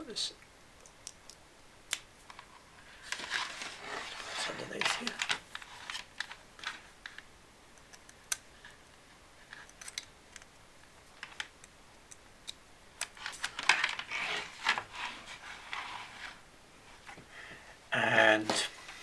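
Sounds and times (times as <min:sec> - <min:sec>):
keyboard being handled clicks: 0:00.8 - 0:02.1, 0:07.1 - 0:08.5, 0:09.5 - 0:10.6
rustling: 0:02.1 - 0:19.0.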